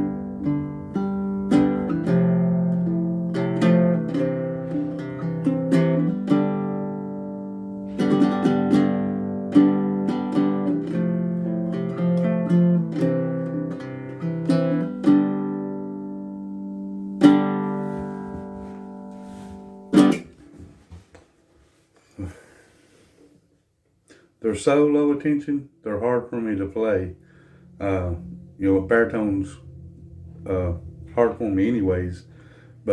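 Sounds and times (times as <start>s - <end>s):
baritone ukulele chords and notes: 0.0s - 20.7s.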